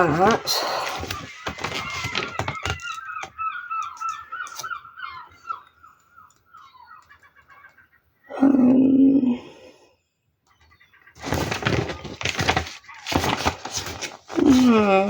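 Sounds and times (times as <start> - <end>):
bird calling: 0.0 - 9.4.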